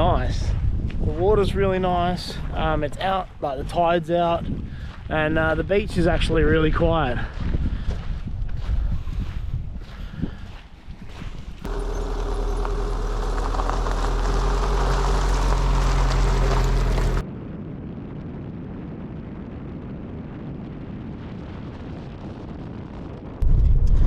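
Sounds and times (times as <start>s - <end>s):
road rumble: 11.6s - 17.2s
vehicle engine driving: 11.6s - 17.2s.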